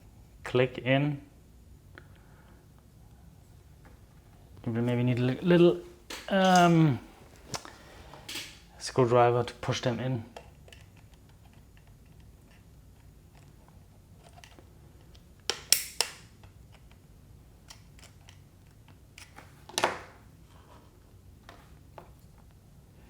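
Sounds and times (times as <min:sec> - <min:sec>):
side clips snapping in: 0:15.5 - 0:16.3.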